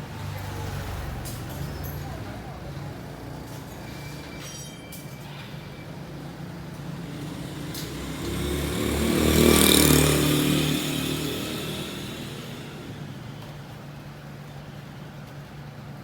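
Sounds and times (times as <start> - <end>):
motorbike passing by: 6.4 - 13.8.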